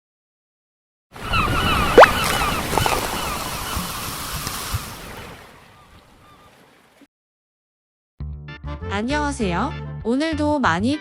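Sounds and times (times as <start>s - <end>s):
short bird calls: 1.2s - 3.8s.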